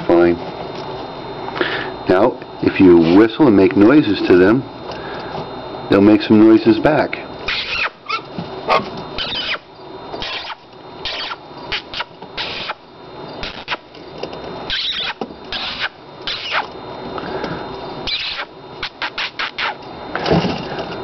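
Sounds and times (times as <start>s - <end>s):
baby prairie dogs squeaking: 7.5s - 12.8s, 14.7s - 16.7s, 18.0s - 19.8s.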